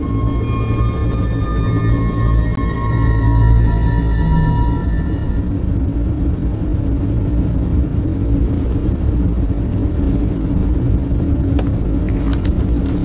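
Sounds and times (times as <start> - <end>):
vehicle engine rumble: 0.0 - 13.0.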